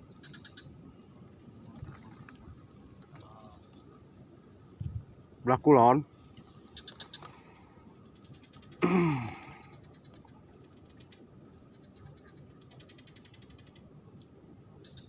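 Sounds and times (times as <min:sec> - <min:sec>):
faint rapid chirping calls: 0:00.0 - 0:15.0
man sighing: 0:08.8 - 0:09.7.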